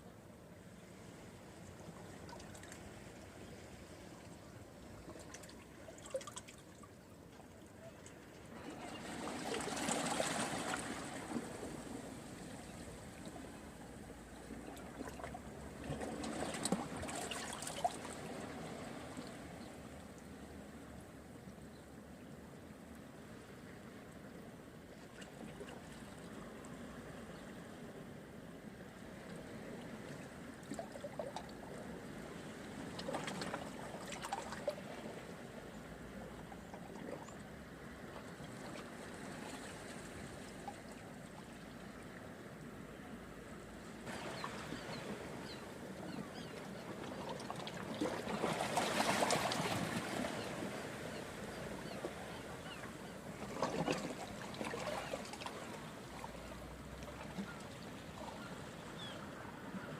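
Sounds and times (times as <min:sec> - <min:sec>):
seawater washing among rocks: 0:08.8 - 0:12.4, 0:46.4 - 0:50.8.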